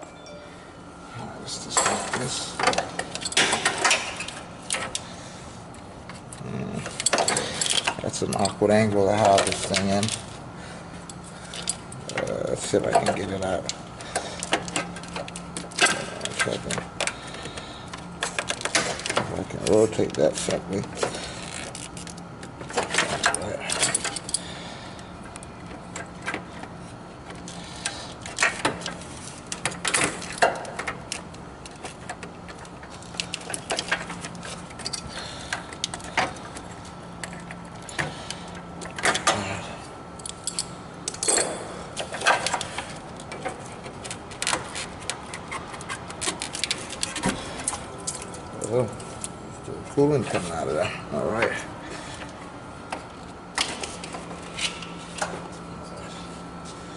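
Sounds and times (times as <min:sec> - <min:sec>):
low hum: 0:00.0 - 0:07.7.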